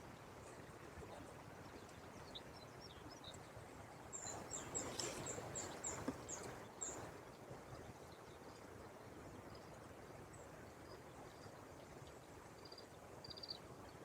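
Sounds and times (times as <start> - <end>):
outdoor background noise: 0.0 - 14.0
small bird chirping: 4.2 - 7.1.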